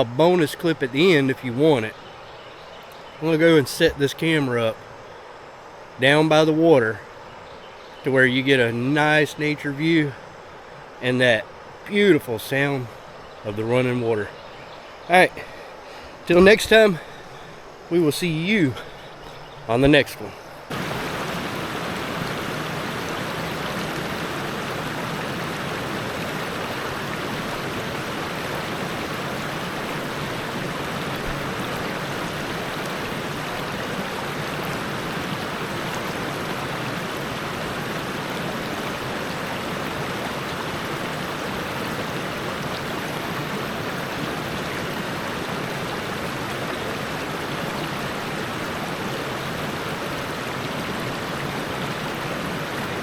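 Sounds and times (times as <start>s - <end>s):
whitewater rushing over rocks: 15.1s - 53.0s.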